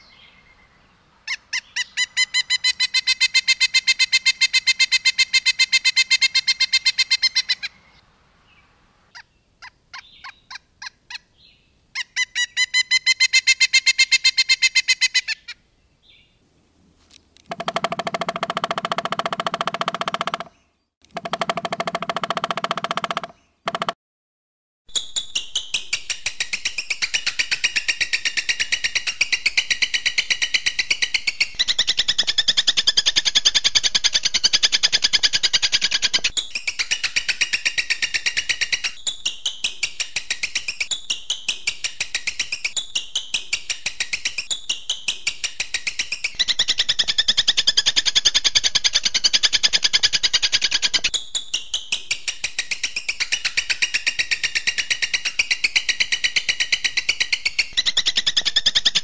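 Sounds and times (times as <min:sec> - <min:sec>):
songbird rattling trill: 0:17.5 - 0:20.6, 0:21.2 - 0:24.0.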